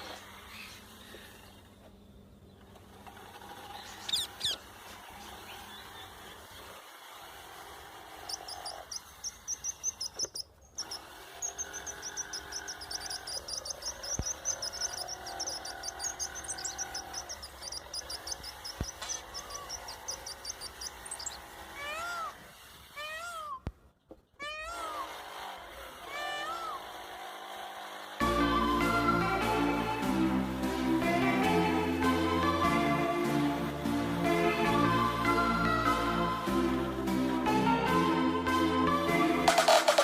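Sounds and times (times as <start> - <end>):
high-pitched animal chirps: 4.0 - 4.6, 8.2 - 22.4
rising animal call: 8.2 - 23.7, 24.4 - 26.9.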